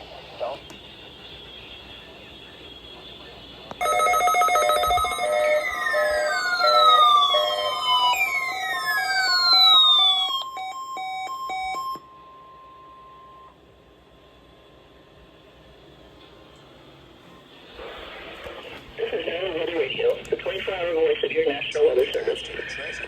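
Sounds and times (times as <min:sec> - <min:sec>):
steady alert tone: 0:03.8 - 0:11.7
falling siren-like sweeps: 0:03.9 - 0:11.8.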